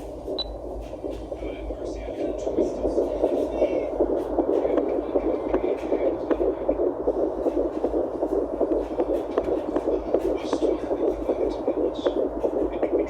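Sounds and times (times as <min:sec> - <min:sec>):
fetal heartbeat pulsing: 0:00.0 - 0:13.0
speaker hiss and hum: 0:00.0 - 0:13.0.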